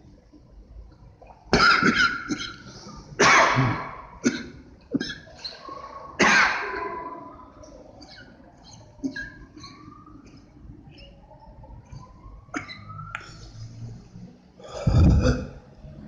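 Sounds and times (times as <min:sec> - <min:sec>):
person coughing hard: 0:01.6 - 0:02.6, 0:03.2 - 0:05.2, 0:06.2 - 0:06.8.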